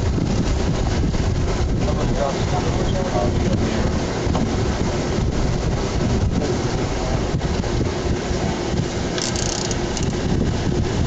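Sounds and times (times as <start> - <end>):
ocean surf: 0.0 - 11.0
wind buffeting microphone: 0.0 - 11.0.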